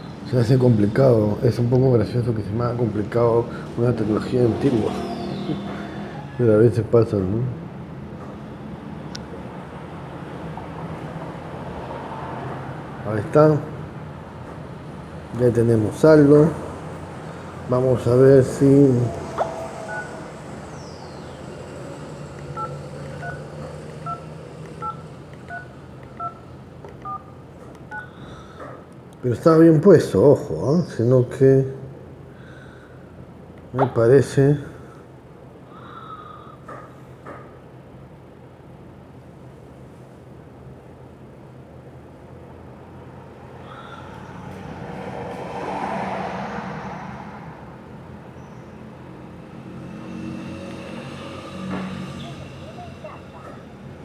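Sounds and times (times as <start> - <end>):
road vehicle passing: 0.1 - 29.2, 40.6 - 54.0
phone keypad two-tone beeps: 19.1 - 20.2, 22.6 - 24.2, 24.8 - 26.4, 27.0 - 27.3, 27.9 - 28.1.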